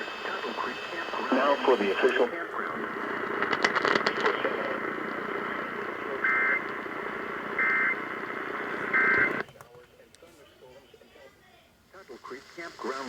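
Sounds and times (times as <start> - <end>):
radio hiss: 0.0 - 9.5, 10.2 - 13.0
two-tone data bursts: 6.1 - 9.4.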